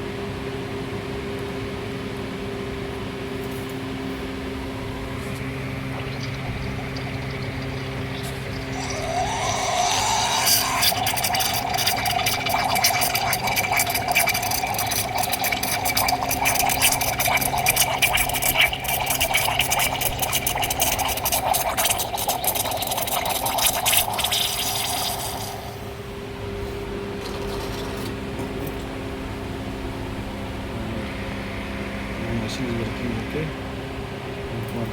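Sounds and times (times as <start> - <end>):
machine low hum: 0.0 - 22.8, 24.2 - 34.9
steam wand hissing and sputtering: 5.8 - 25.9.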